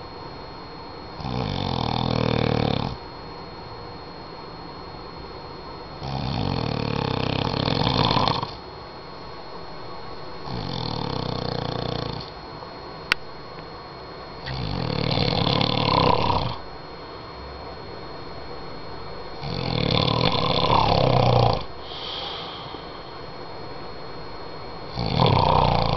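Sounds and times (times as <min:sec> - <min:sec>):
man snoring: 0:01.2 - 0:03.0, 0:06.0 - 0:08.6, 0:10.5 - 0:12.3, 0:14.4 - 0:16.6, 0:19.4 - 0:23.2, 0:24.9 - 0:25.9.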